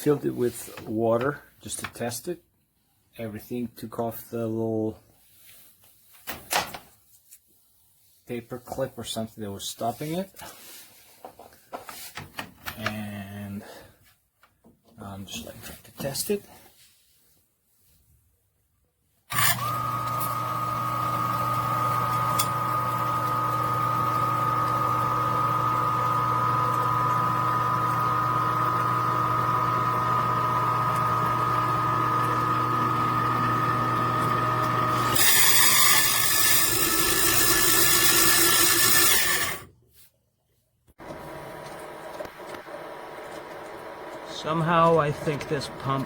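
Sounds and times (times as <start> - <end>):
pump motor humming with whine: 19.3 - 39.7, 41.0 - 46.0.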